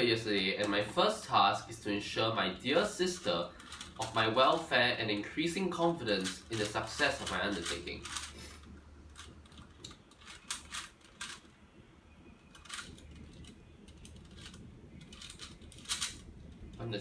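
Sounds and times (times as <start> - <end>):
low steady hum: 0.0 - 17.0
puzzle cube layers clicking: 6.1 - 11.5, 12.5 - 16.3.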